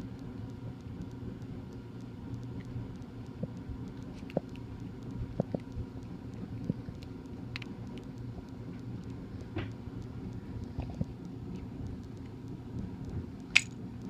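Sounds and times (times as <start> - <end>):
steady low hum: 0.0 - 14.0
small plastic and metal clicks: 13.4 - 13.8.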